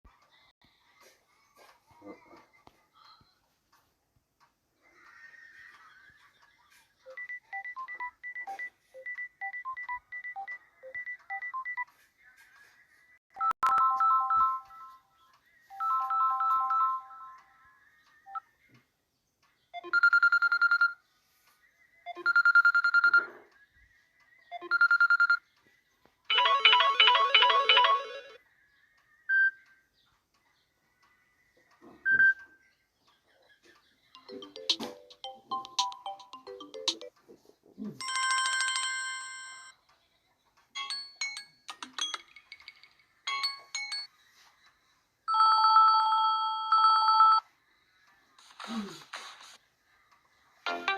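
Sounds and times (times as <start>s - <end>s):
phone ringtone beeps: 7.1s - 11.9s, 13.4s - 15.0s, 15.7s - 17.4s, 19.8s - 21.1s, 22.1s - 23.4s, 24.5s - 25.5s, 26.3s - 28.4s, 45.3s - 47.5s.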